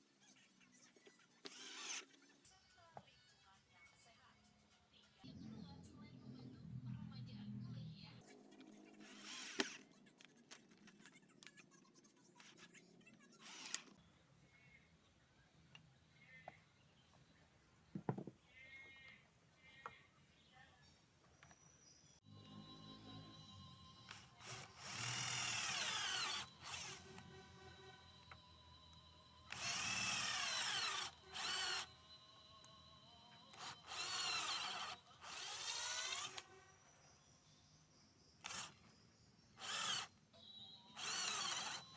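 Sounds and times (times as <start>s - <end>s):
short bursts of tool noise: 1.2s - 2.3s, 9.0s - 10.0s, 12.4s - 14.0s, 24.1s - 27.9s, 29.5s - 31.9s, 33.5s - 36.6s, 38.4s - 38.9s, 39.6s - 40.1s, 40.9s - 41.9s
electric power drill: 1.4s - 2.3s, 9.0s - 9.8s, 13.4s - 14.0s, 22.5s - 36.6s, 38.4s - 38.9s, 39.6s - 41.9s.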